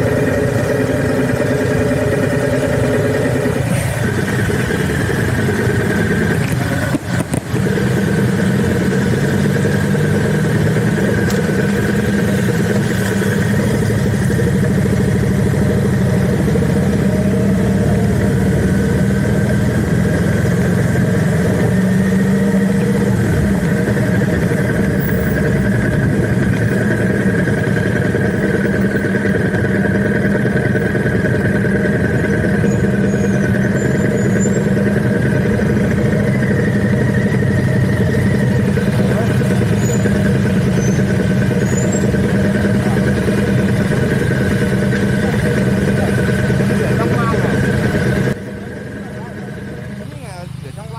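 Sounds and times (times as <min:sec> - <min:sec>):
vehicle engine droning: 0:00.0 - 0:50.9.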